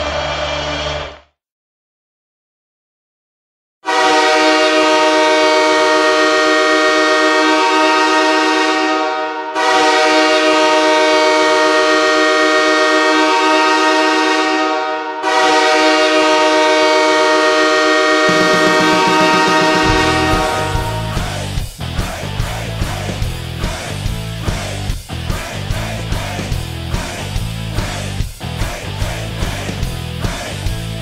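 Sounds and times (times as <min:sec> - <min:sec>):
chord horn blasts: 0:03.8 - 0:21.6.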